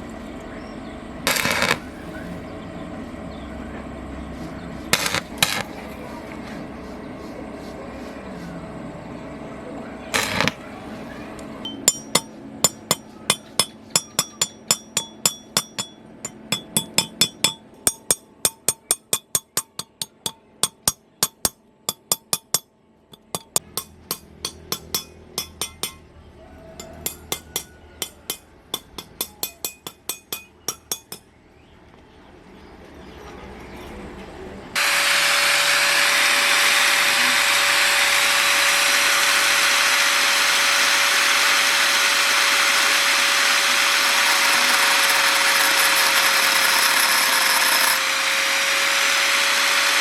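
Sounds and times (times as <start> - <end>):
hammer striking metal: 1.3 - 1.8, 5.0 - 5.7, 11.6 - 26.0, 26.8 - 31.3.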